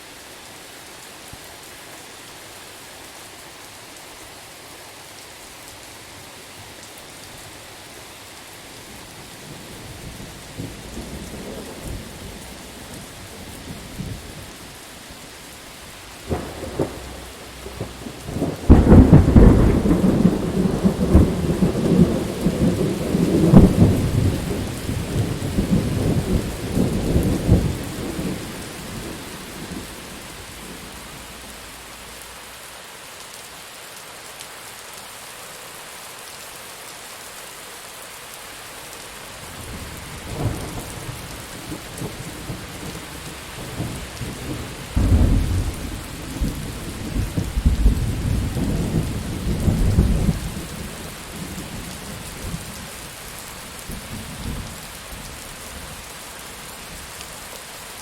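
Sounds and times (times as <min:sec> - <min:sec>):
steady rain: 0:00.0 - 0:58.0
rolling thunder: 0:16.3 - 0:32.1, 0:39.6 - 0:52.7.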